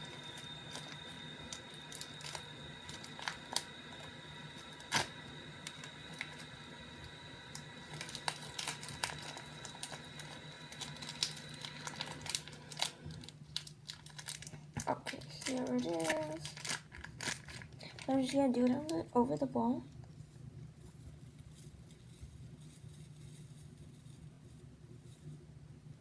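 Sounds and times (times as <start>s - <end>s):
low hum: 0.0s - 16.8s
faint high whine: 0.0s - 26.0s.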